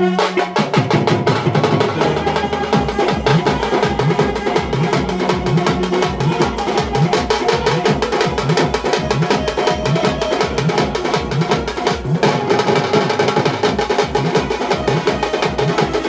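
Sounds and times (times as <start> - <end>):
fast drum strokes: 0.0 - 16.0
heavy pulsing bass beat: 1.6 - 12.3.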